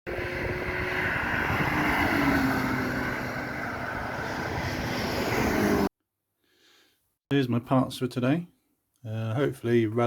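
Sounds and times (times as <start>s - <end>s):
wind noise: 0.1s - 5.9s.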